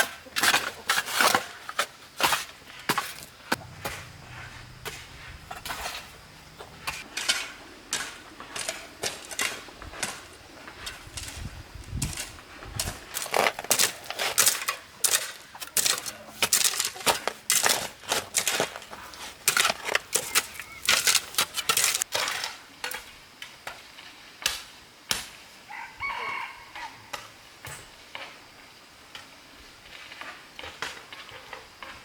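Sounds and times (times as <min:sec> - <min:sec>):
chicken call: 0:25.7 - 0:27.0.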